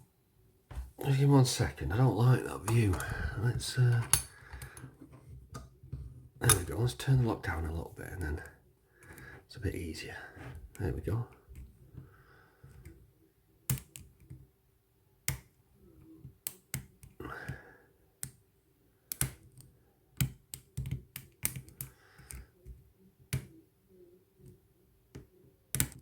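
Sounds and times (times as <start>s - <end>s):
metallic clicks of lock picking: 4.0s - 4.8s, 19.1s - 22.4s.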